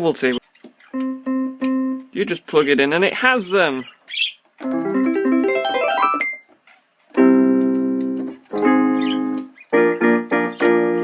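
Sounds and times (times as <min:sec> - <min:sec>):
electronic keyboard notes and chords: 0:00.9 - 0:02.2, 0:04.6 - 0:06.5, 0:07.1 - 0:11.0.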